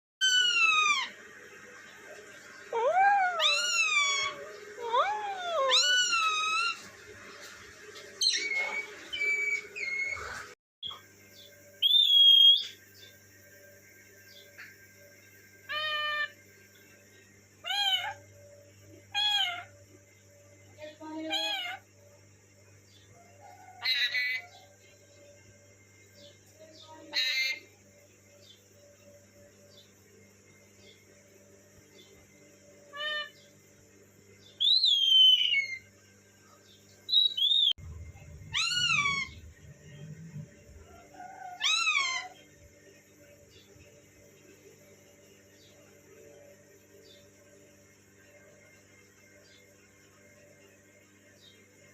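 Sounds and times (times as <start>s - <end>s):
parrot meowing calls: 0.2s - 1.2s, 2.7s - 6.9s, 15.7s - 16.4s, 17.6s - 18.2s, 19.1s - 19.7s, 21.3s - 21.8s, 23.7s - 24.7s, 27.1s - 27.6s, 32.9s - 33.4s, 38.5s - 39.5s, 41.0s - 42.4s.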